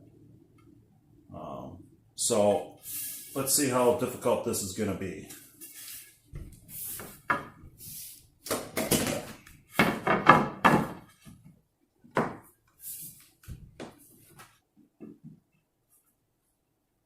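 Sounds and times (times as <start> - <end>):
floorboard scraping: 5.4 - 8.2
wooden knocks and thumps: 7.3 - 7.6, 8.6 - 11.5.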